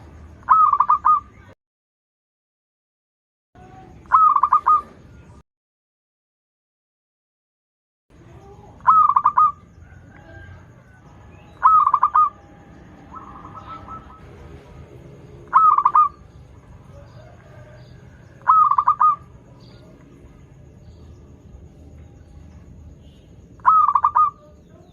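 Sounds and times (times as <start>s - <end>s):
dove cooing: 0.5s - 1.3s, 4.1s - 5.0s, 8.4s - 20.1s, 23.6s - 24.9s.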